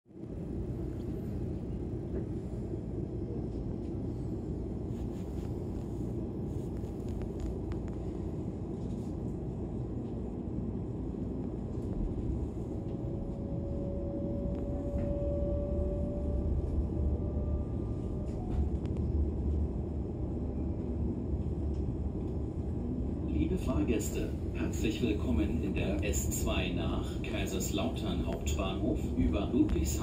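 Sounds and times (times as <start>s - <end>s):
train running gear rumble: 0.1s - 30.0s
traction drive whine: 11.8s - 19.7s.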